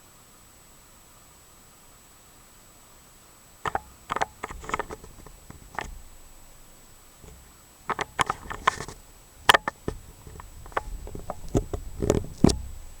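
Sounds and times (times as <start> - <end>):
objects being handled: 3.7 - 6.6, 7.2 - 13.0.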